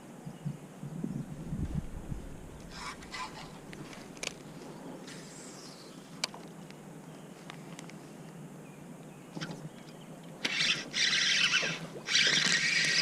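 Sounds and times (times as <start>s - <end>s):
fishing reel whirring: 10.4s - 13.0s.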